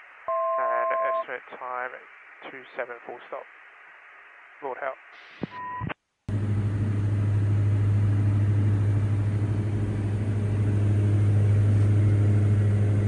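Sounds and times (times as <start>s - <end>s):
aircraft cabin engine drone: 6.3s - 13.0s.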